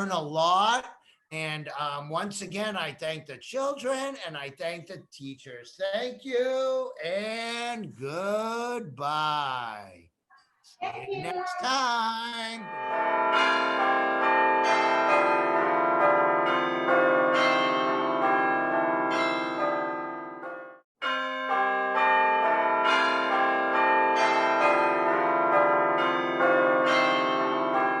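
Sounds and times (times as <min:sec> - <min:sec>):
bells ringing: 0:11.0 - 0:28.0.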